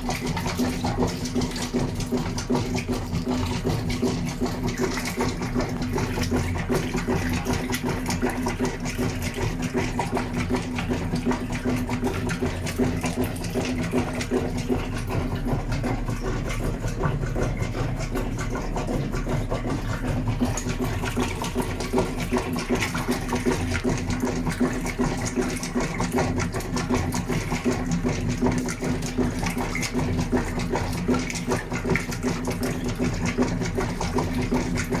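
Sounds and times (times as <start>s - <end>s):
washing machine motor hum: 0.0s - 35.0s.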